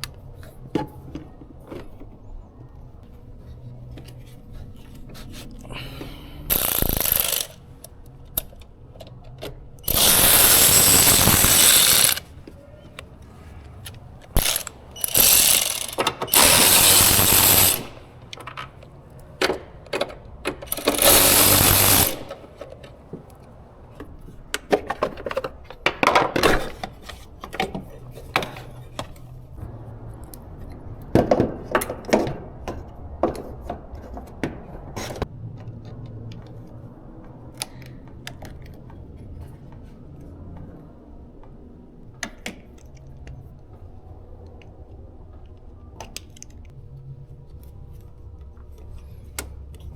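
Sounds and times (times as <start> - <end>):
power wrench running: 6.5 - 7.6, 9.8 - 12.3, 14.4 - 18.2, 20.6 - 22.5
ratchet clicks: 6.5 - 8.6, 9.8 - 12.3, 14.3 - 18.0, 20.6 - 22.4.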